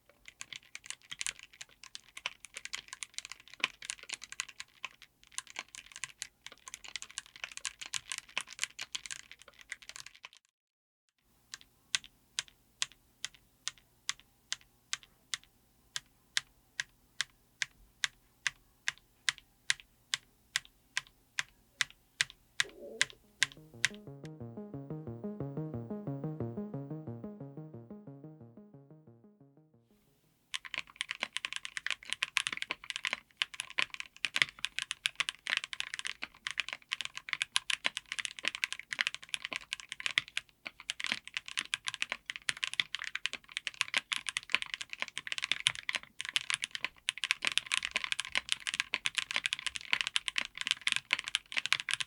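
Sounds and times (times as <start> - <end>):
mechanical keyboard typing: 0.2 - 10.3, 30.6 - 52.0
low pulsing synth tone: 22.6 - 29.9.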